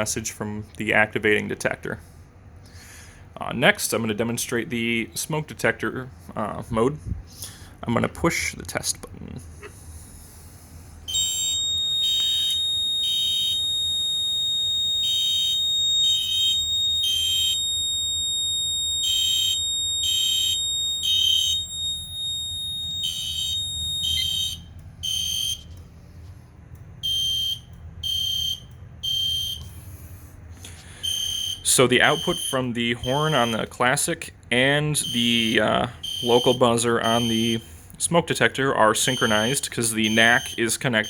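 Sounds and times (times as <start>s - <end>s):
fire alarm horn blasts: 11.1s - 25.7s, 27.0s - 29.7s, 30.9s - 33.8s, 35.0s - 37.8s, 39.0s - 41.0s
smoke detector beeps: 11.1s - 25.8s, 27.0s - 29.8s, 30.9s - 33.8s, 35.0s - 37.8s, 39.0s - 41.0s
steady high tone: 31.1s - 33.8s, 35.0s - 37.6s.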